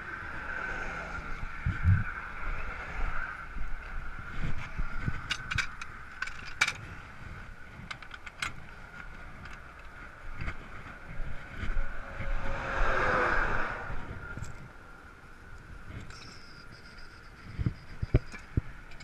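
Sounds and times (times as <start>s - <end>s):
highway traffic passing: 0.0s - 19.0s
metallic tool clinks: 16.0s - 19.0s.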